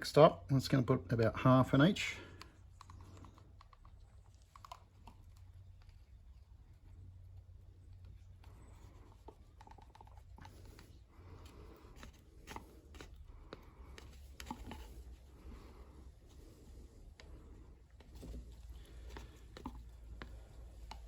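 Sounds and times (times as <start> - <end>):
low steady hum: 0.0 - 21.0
plastic cups tapping and clicking: 7.9 - 21.0.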